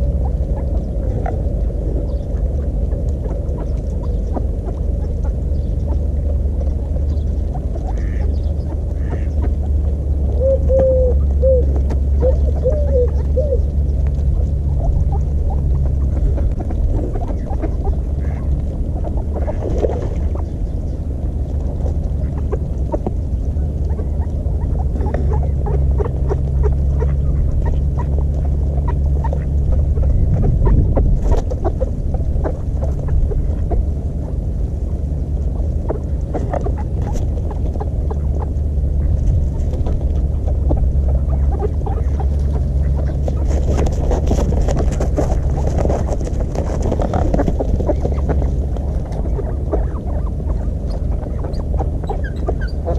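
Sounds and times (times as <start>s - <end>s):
steady low rumble: 0.0s - 52.9s
soft duck calls: 7.8s - 9.8s, 17.3s - 18.6s.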